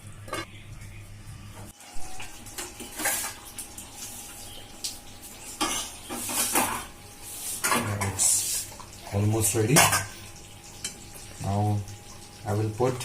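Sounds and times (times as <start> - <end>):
metal cookware clinking and scraping: 0.2 - 0.5, 2.1 - 3.5, 5.5 - 8.6, 9.6 - 10.2.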